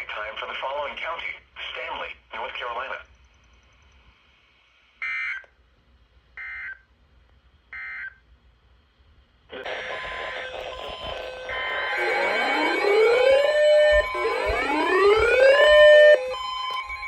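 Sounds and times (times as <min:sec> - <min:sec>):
harsh alert tone: 0:09.7 - 0:17.0.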